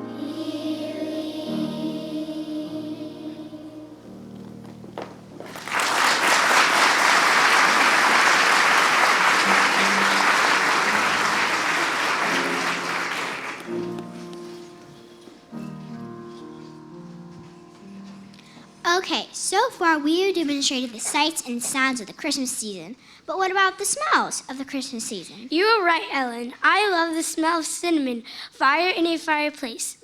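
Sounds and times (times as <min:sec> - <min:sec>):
held musical notes: 0:00.0 - 0:18.8
audience applauding: 0:05.0 - 0:14.3.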